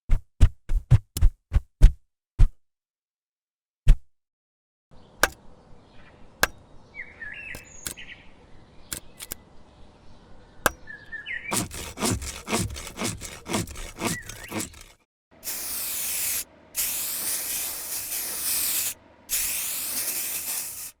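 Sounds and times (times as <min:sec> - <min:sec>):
sharp clicks and taps: 0:05.2 - 0:05.4, 0:08.9 - 0:09.4
rubbing knocks: 0:11.5 - 0:15.0
short squeaks: 0:11.5 - 0:15.0
loud hiss: 0:15.4 - 0:21.0.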